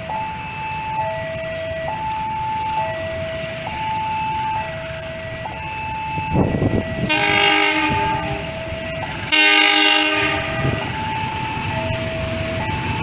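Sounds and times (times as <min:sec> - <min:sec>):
level crossing alarm: 0:00.0 - 0:13.0
passing train rumble: 0:00.0 - 0:13.0
locomotive horn blasts: 0:06.4 - 0:11.5.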